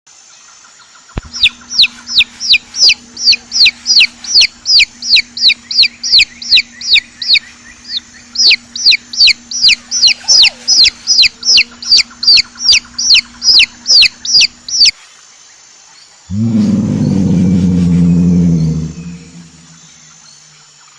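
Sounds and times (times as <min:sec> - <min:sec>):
faint steady hum: 0:00.1 - 0:20.9
chick peeping: 0:01.2 - 0:15.0.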